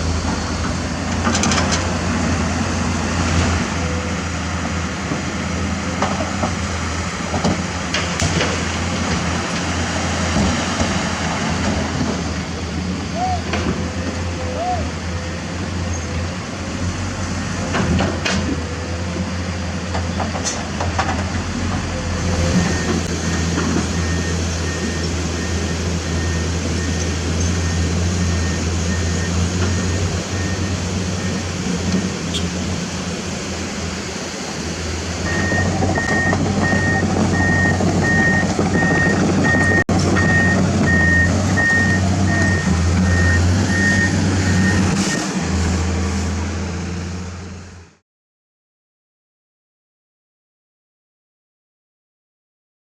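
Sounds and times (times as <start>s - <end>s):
heavy machinery diesel engines: 0.0s - 48.0s
reversing alarm beeping: 21.9s - 32.2s, 35.2s - 45.3s.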